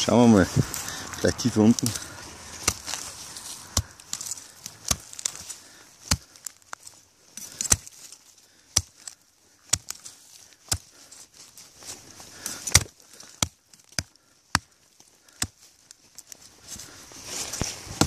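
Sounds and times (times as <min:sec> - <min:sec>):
tool chopping into tree stump: 0:02.6 - 0:05.4, 0:06.0 - 0:06.6, 0:07.4 - 0:07.9, 0:08.7 - 0:10.0, 0:10.6 - 0:10.9, 0:12.6 - 0:15.6.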